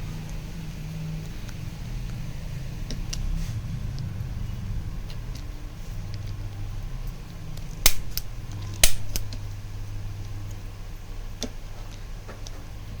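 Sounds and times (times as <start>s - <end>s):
spring-loaded adjuster snapping: 7.9s - 9.4s.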